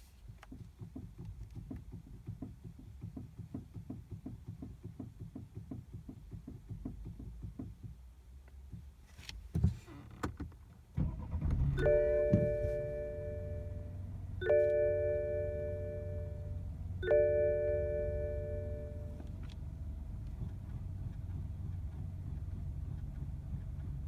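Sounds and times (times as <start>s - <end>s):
steering rack knocking: 11.9s - 19.4s.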